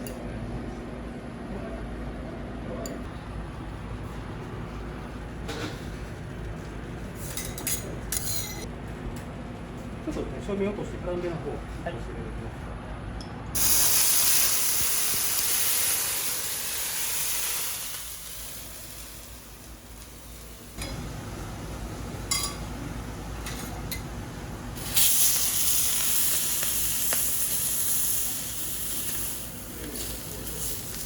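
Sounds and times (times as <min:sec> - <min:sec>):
food sizzling on a griddle: 0:13.6 - 0:21.1, 0:24.8 - 0:31.0.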